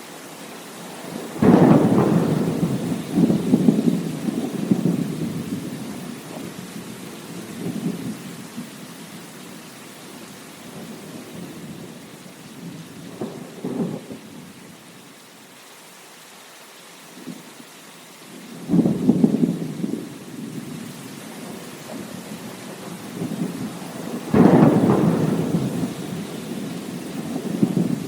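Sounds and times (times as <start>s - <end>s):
steady rain: 0.0s - 28.0s
rolling thunder: 0.9s - 8.7s, 10.7s - 14.5s, 18.6s - 28.0s.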